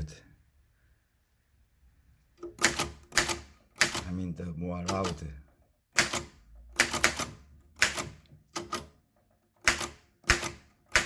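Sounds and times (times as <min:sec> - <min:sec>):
typewriter key strikes: 0:02.5 - 0:04.1, 0:04.8 - 0:05.2, 0:06.0 - 0:08.9, 0:09.6 - 0:11.0.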